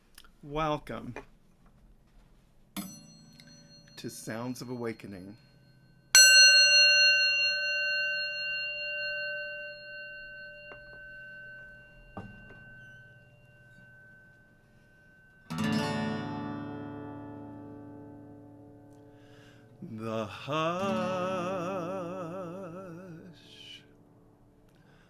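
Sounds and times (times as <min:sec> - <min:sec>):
bright note ringing: 0:02.8 - 0:18.2
low chord ringing: 0:02.8 - 0:25.0.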